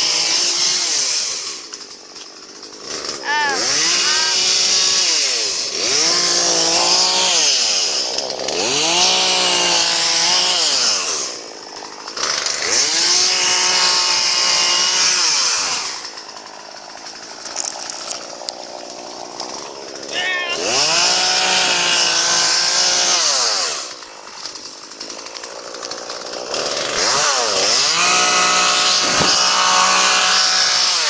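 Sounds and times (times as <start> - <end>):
chainsaw engine revving: 0.0 - 31.0
chainsaw idling: 0.0 - 31.0.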